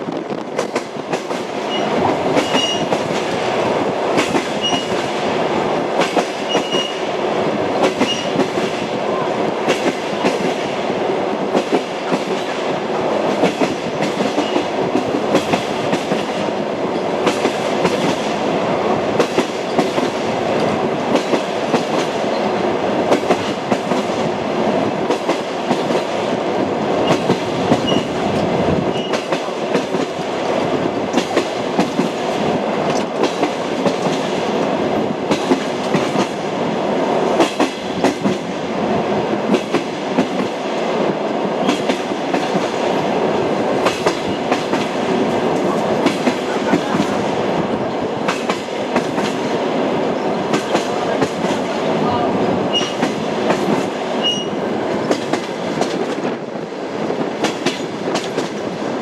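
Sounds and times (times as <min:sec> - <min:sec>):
train wheels clattering over rail joints: 0:00.1 - 0:05.3, 0:19.2 - 0:24.2, 0:35.3 - 0:36.4, 0:39.4 - 0:40.6, 0:41.6 - 0:43.0, 0:43.7 - 0:47.2, 0:48.2 - 0:49.6, 0:52.7 - 0:56.4, 0:57.1 - 0:58.8.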